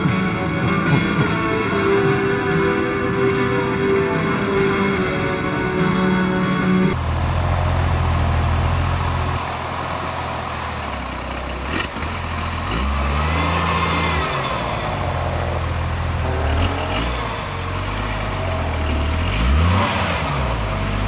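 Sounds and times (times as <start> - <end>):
background music: 0.0 - 7.0, 12.6 - 21.0
off-road vehicle engine under load: 0.0 - 21.0.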